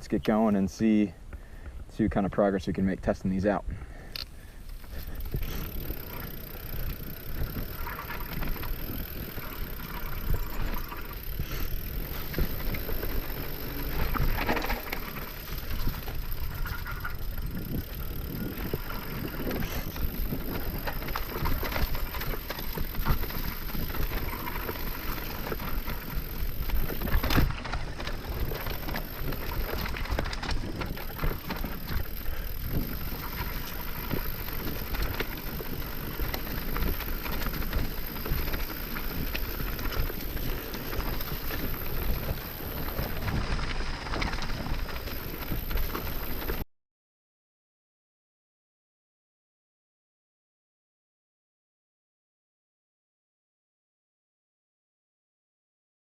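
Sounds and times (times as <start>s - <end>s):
bike tyres rushing on dirt: 3.8s - 46.6s
bike knocking and rattling: 4.7s - 46.6s.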